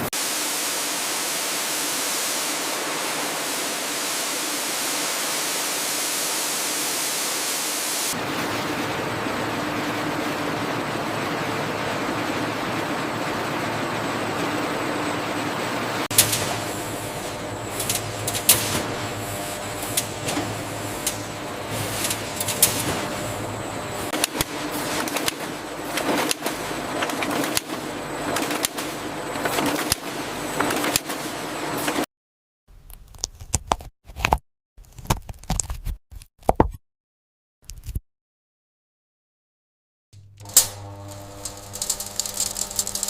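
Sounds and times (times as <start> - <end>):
processing machinery humming: 0.0 - 32.1, 40.2 - 43.0
short clicks and clacks: 24.1 - 31.2.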